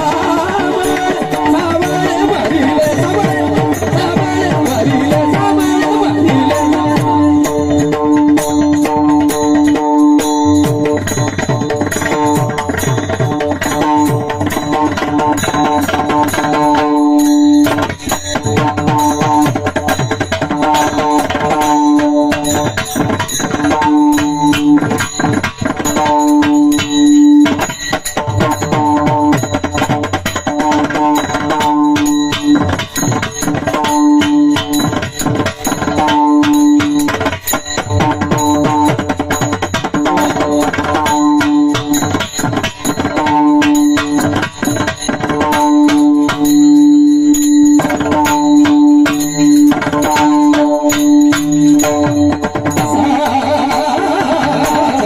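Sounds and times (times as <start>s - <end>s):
drum rhythm: 0.0s - 55.0s
hand cymbals jingling: 0.0s - 55.0s.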